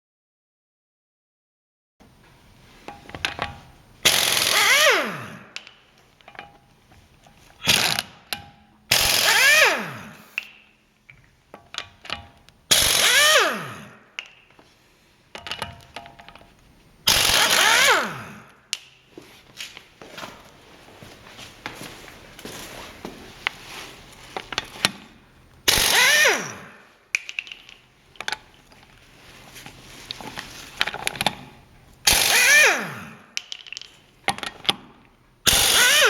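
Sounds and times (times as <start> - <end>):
air impact wrench hammering: 4.0 - 5.8, 7.6 - 10.7, 11.8 - 14.4, 17.1 - 19.0, 25.6 - 27.7, 32.0 - 33.4, 35.5 - 36.0
small metallic clicks and knocks: 5.5 - 8.8, 10.3 - 12.8, 15.3 - 16.7, 27.1 - 32.1, 33.3 - 35.2.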